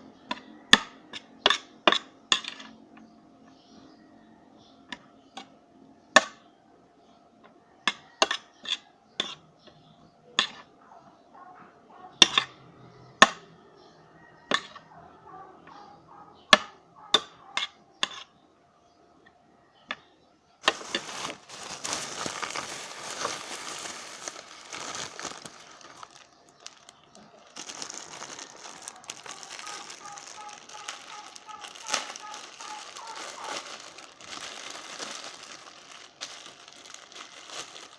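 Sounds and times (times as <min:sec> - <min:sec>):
dense crackling eating sounds: 0:20.6 - 0:37.9.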